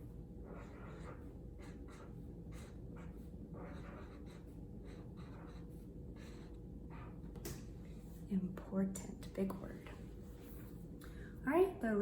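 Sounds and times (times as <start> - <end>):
pen scratching on paper: 0.0 - 8.2.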